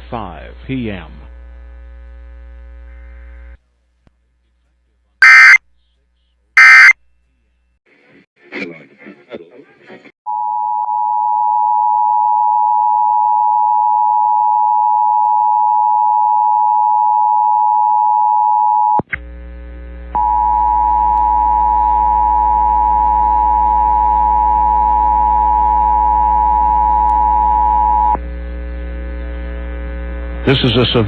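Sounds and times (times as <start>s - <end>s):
two-tone alert tone: 5.2s - 5.6s, 6.6s - 6.9s.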